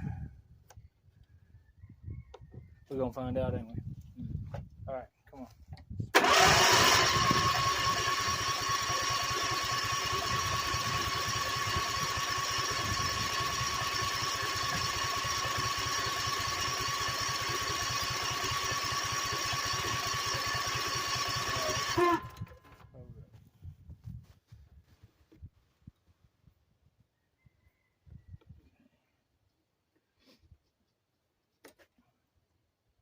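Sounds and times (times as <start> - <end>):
chainsaw engine running: 6.2 - 22.8.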